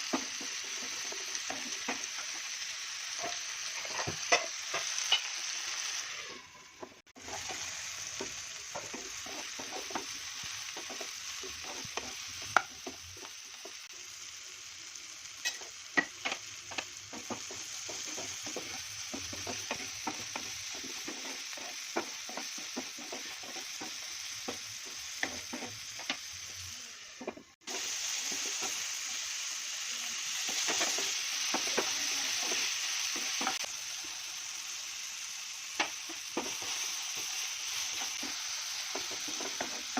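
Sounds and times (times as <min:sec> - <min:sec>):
food sizzling in pan: 0:00.0 - 0:39.9
spoon scraping and tapping pan: 0:03.2 - 0:05.3, 0:08.2 - 0:13.0, 0:15.4 - 0:26.2.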